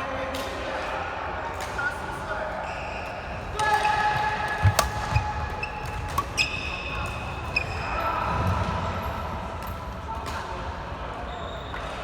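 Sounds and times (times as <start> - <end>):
shoes squeaking on floor: 2.7 - 7.9
rackets hitting shuttlecock: 3.5 - 7.4.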